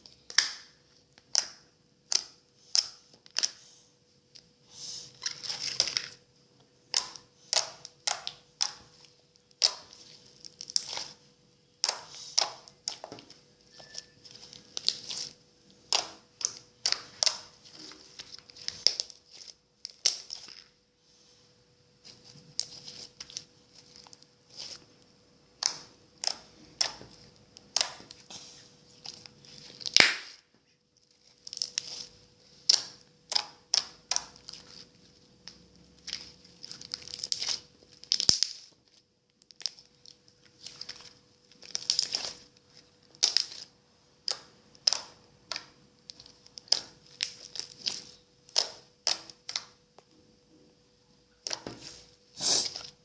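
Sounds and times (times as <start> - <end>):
slime squishing and popping: 6.9 - 20.7, 25.5 - 28.3, 29.0 - 30.4, 31.2 - 49.8.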